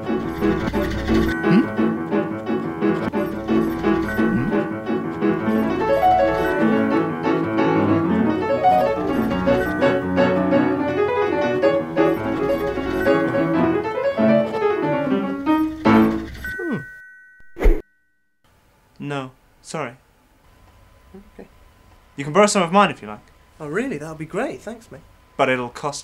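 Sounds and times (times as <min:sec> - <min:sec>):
piano music: 0:00.0 - 0:16.6.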